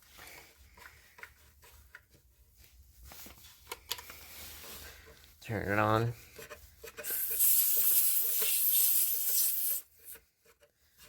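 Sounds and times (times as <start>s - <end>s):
air hissing from tyre valve: 7.0s - 10.2s.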